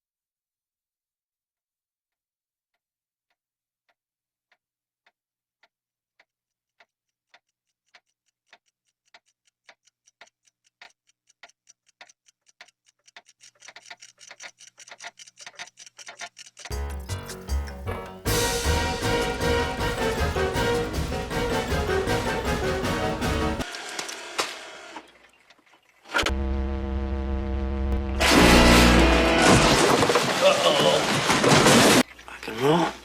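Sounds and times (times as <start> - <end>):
clocks ticking: 6.8 - 23.7
loud sound: 26.3 - 30.7.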